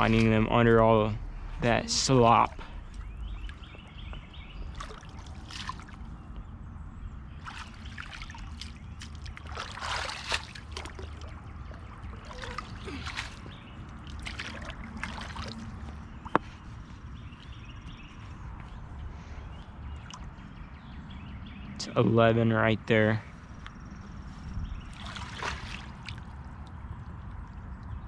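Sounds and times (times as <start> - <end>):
pond water sloshing and splashing: 2.0 - 6.4, 7.3 - 19.0, 19.8 - 21.0, 24.6 - 28.0.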